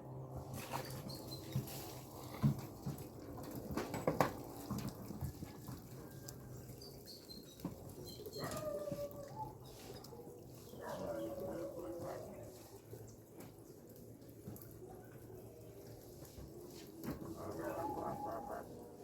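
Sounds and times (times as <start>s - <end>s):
dog whining: 17.4s - 18.8s.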